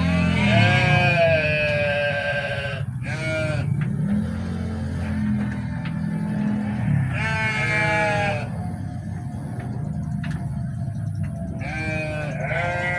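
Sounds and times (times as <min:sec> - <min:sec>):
sheep bleating: 0:00.0 - 0:03.8, 0:06.1 - 0:08.6, 0:11.6 - 0:12.9
low steady drone: 0:00.0 - 0:12.9.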